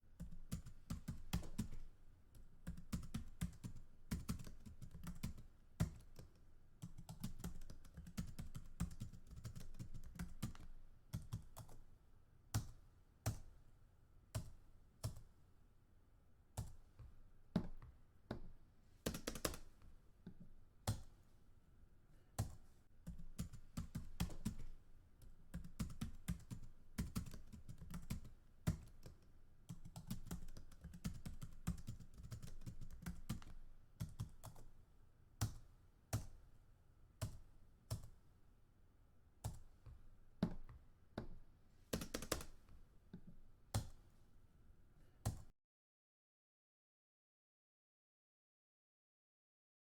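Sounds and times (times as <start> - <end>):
computer keyboard typing: 0.2 - 11.8, 19.1 - 19.7, 22.4 - 24.8, 25.5 - 34.7, 41.9 - 42.6.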